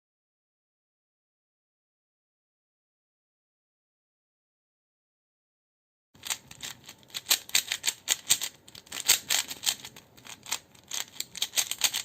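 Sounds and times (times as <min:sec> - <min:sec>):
puzzle cube clicking and rattling: 0:06.2 - 0:12.0.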